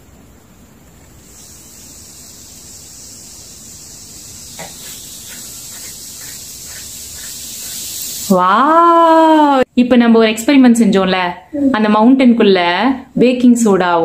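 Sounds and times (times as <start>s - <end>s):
fizzing hiss: 0.5s - 9.6s.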